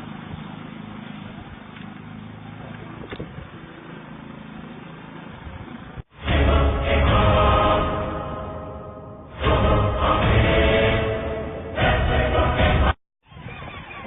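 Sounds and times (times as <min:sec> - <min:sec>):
loud music: 0:06.1 - 0:13.0.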